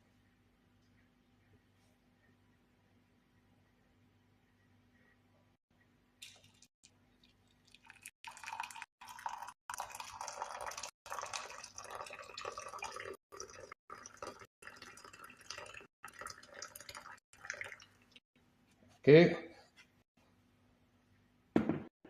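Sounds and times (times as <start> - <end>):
water pouring into container: 6.2 - 18.2.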